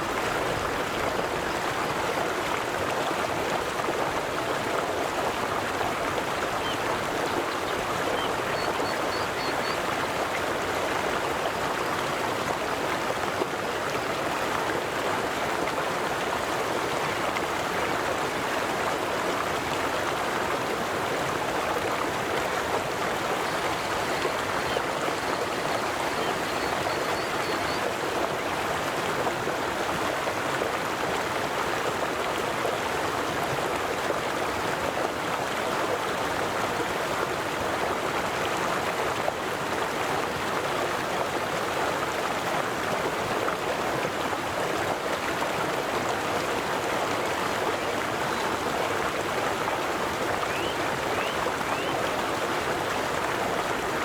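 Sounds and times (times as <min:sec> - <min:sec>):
flowing river rushing: 0:00.0 - 0:54.0.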